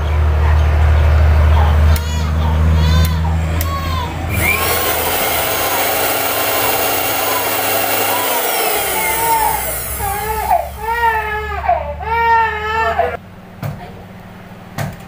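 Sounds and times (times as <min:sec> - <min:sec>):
baby crying: 0:02.0 - 0:04.4, 0:07.2 - 0:13.2
mixer grinder motor running: 0:03.6 - 0:11.7
motor winding down whine: 0:04.3 - 0:11.6.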